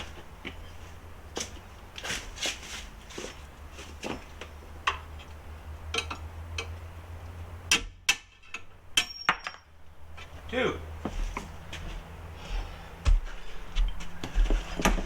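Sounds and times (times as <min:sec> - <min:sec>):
hand tools clinking on steel: 0:08.3 - 0:10.6
steady low hum: 0:09.7 - 0:15.0.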